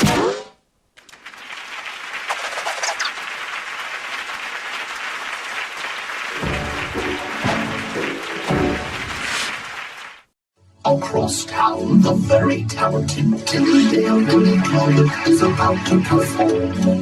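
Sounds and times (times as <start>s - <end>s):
audience applause: 1.0s - 10.3s
music notes: 6.4s - 9.2s.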